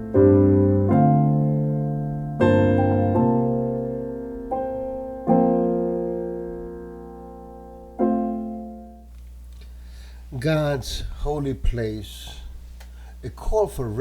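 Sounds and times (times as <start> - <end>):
slow solo piano chords: 0.0 - 9.1.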